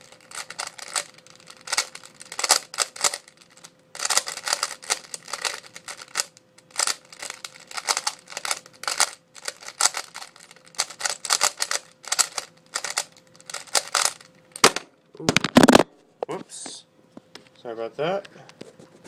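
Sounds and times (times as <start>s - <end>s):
rapid plastic clicking of puzzle cube: 0.0s - 14.3s.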